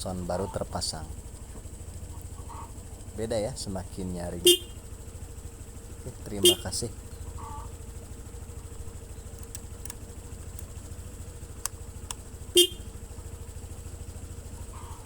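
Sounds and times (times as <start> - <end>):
scooter horn toot: 4.4 - 5.0, 6.4 - 6.8, 12.4 - 13.2.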